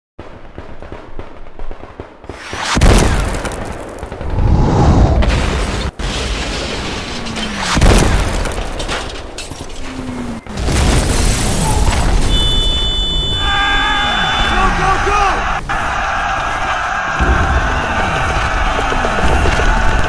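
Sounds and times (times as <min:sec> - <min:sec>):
rifle and machine-gun fire: 0:00.2 - 0:04.4, 0:05.3 - 0:09.0, 0:15.7 - 0:20.0
artillery shells exploding: 0:00.2 - 0:09.8, 0:10.4 - 0:13.4.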